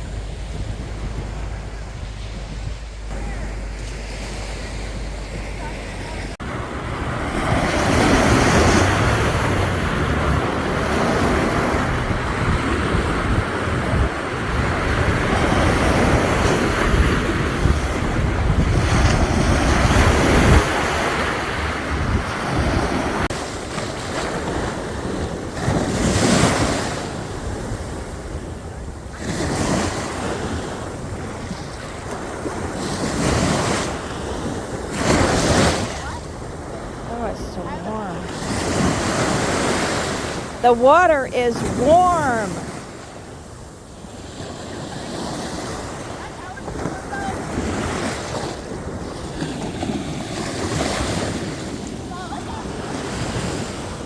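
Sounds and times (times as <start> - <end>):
ocean waves washing in: 0.0 - 54.0
wind rumbling on microphone: 0.0 - 54.0.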